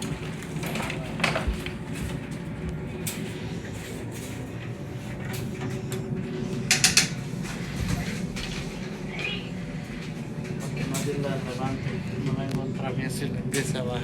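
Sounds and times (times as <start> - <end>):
metal stand clicking and clanking: 6.7 - 7.2.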